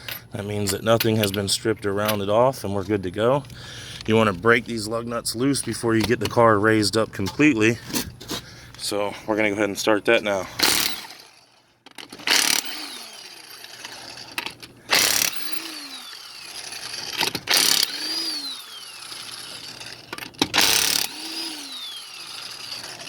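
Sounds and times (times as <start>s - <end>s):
power tool loosening lug nuts: 10.5s - 23.0s
motor whine winding down: 15.0s - 20.0s, 20.6s - 23.0s.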